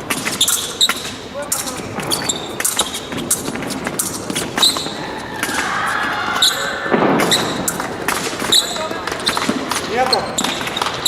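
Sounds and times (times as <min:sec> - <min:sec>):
shoe squeaks: 0:00.0 - 0:11.0
sharp knocks: 0:06.9 - 0:09.8.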